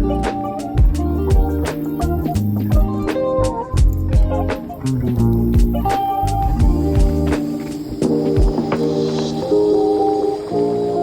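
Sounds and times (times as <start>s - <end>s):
background music with drum beat: 0.0s - 9.6s.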